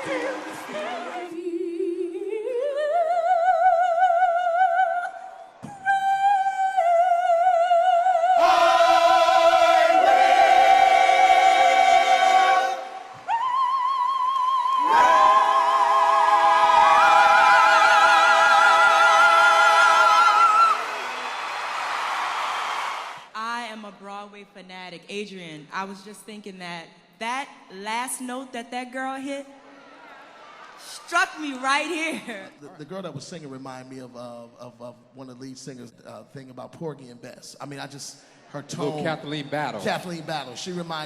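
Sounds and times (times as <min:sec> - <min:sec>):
voices singing in harmony: 0:00.0 - 0:05.5, 0:06.8 - 0:20.9
woman singing opera: 0:00.0 - 0:08.4, 0:13.2 - 0:20.8.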